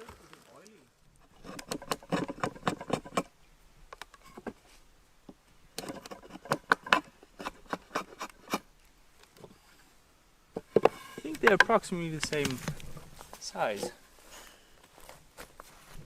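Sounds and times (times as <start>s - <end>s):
wooden clicks and knocks: 10.5s - 12.9s.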